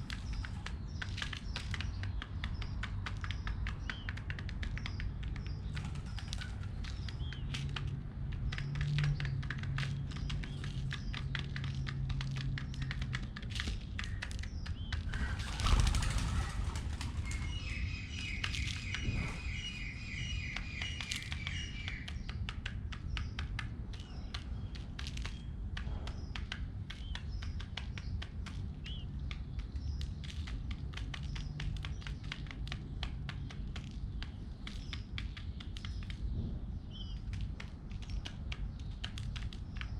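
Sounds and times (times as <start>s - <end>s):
wing flapping: 0.0s - 28.8s
pigeons pecking at seeds: 0.0s - 39.9s.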